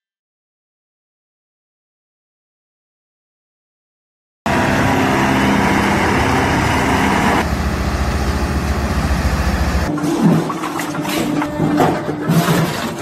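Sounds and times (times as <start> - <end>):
deep pulsing engine: 4.5 - 9.9
engine running: 4.5 - 9.9.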